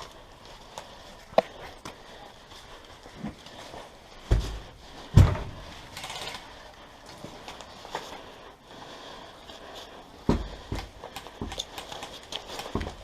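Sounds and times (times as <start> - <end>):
heavy thumps: 4.2 - 5.8, 10.2 - 11.6.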